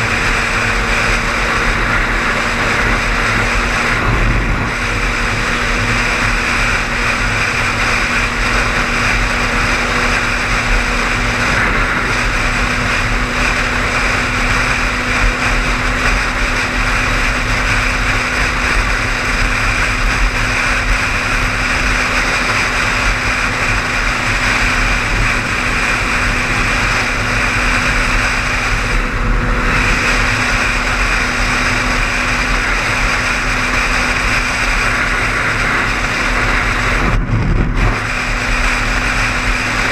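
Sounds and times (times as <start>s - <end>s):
car engine hum: 0.0s - 39.9s
road and tyre noise: 0.0s - 39.9s.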